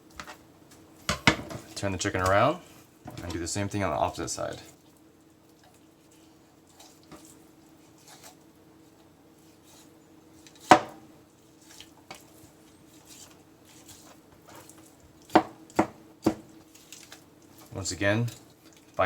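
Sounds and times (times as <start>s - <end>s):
faint steady hum: 0.0s - 19.0s
knife cutting raw chicken: 9.4s - 12.3s.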